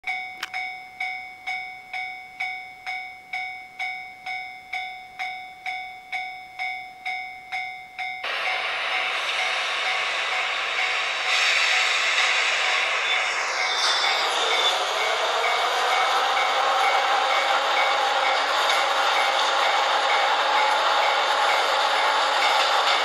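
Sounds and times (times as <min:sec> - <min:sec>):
level-crossing alarm ringing: 0:00.1 - 0:23.0
locomotive blowers hissing: 0:08.3 - 0:23.0.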